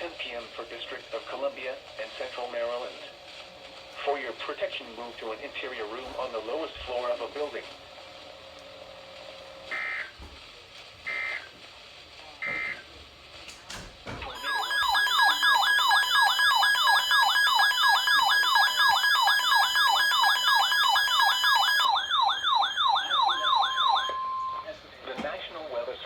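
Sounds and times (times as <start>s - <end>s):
yelping electronic siren: 14.3s - 24.7s.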